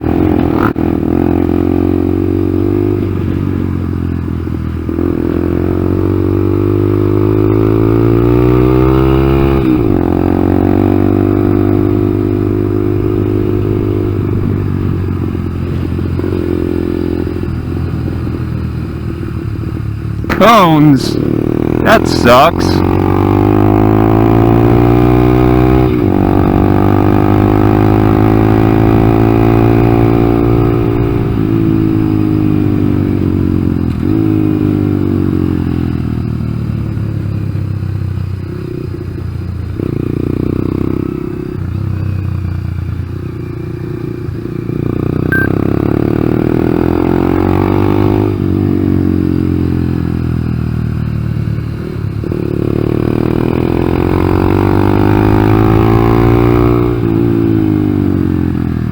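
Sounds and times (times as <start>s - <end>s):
motorcycle engine revving: 0.0s - 58.9s.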